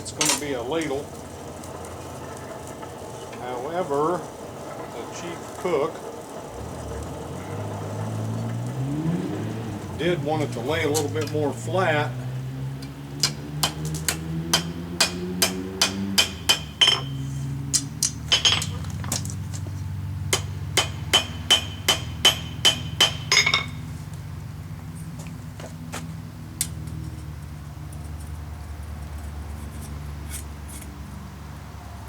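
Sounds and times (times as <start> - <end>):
steady low hum: 9.6 - 32.0
hammer striking steel: 13.2 - 18.8, 20.3 - 23.9.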